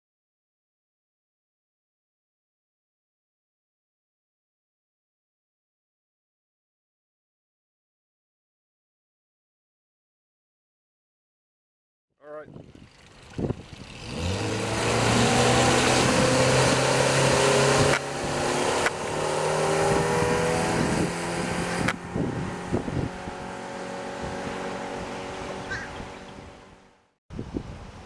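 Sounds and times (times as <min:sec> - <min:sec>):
outboard motor running: 0:12.5 - 0:27.0
wind and water rushing: 0:12.6 - 0:28.0.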